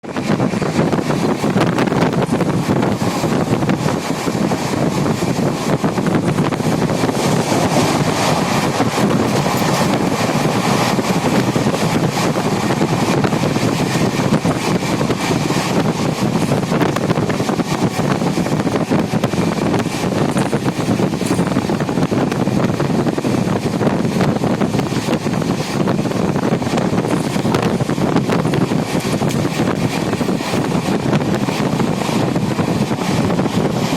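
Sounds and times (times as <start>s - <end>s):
passenger train running at speed: 0.0s - 33.9s
wind blowing across microphone: 0.0s - 33.9s.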